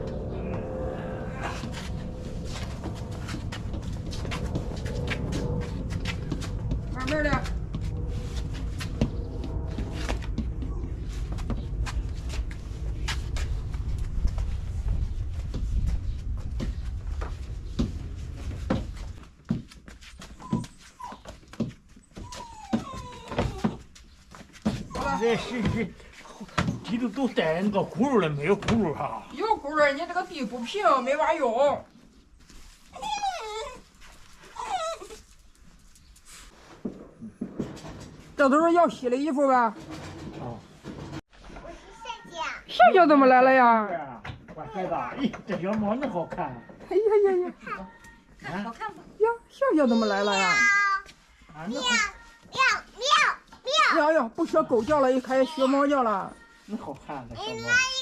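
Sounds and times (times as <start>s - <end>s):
footsteps: 0.0s - 42.6s
small animal whining: 22.1s - 23.8s, 32.9s - 35.4s
washing machine being moved: 36.8s - 41.3s.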